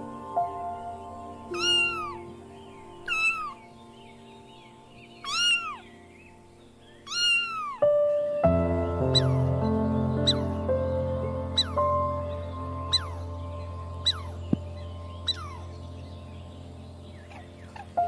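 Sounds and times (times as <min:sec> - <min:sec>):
soft background music: 0:00.0 - 0:18.0
cat meowing: 0:01.6 - 0:02.1, 0:05.3 - 0:05.8, 0:07.1 - 0:07.8.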